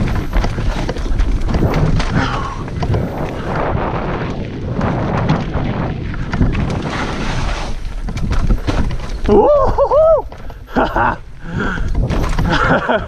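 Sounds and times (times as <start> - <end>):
mountain bike rattling over roots: 0.0 - 13.0
wind on microphone: 0.0 - 13.0.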